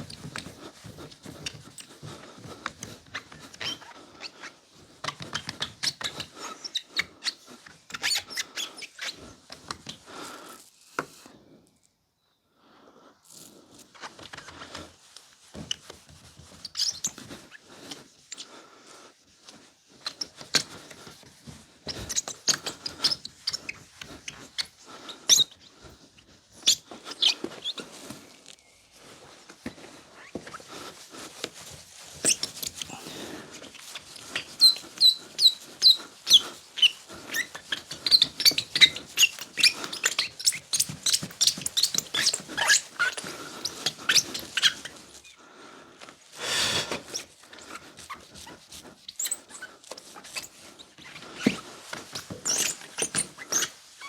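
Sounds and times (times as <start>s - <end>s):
cloth squeaking on plastic lens: 0.0s - 9.9s, 15.6s - 18.5s, 19.9s - 28.8s, 30.0s - 45.4s, 47.1s - 54.0s.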